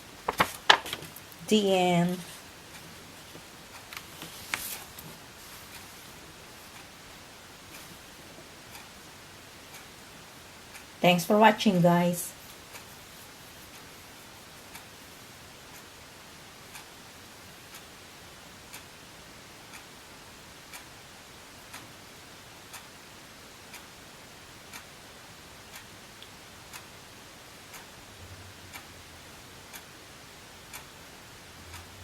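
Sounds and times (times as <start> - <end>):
faint low hum: 0.0 - 32.0
faint room hiss: 0.0 - 32.0
clock ticking: 8.6 - 9.0, 27.7 - 27.9.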